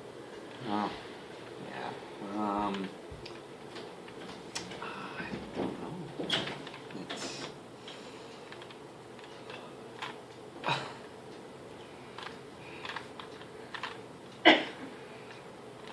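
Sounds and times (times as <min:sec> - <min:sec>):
plastic puzzle cube clacking: 0:12.2 - 0:14.0.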